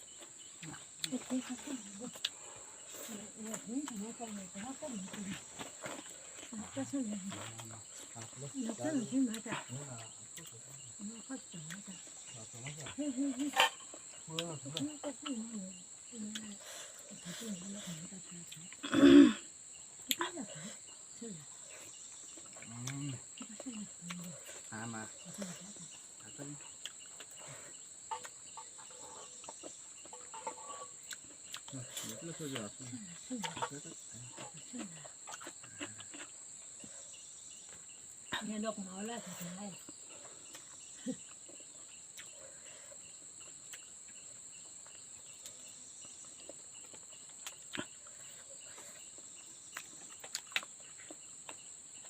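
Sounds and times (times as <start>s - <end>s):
crickets droning: 0.0s - 52.0s
insects chirring: 0.0s - 52.0s
people talking quietly: 0.6s - 19.5s, 20.1s - 28.2s.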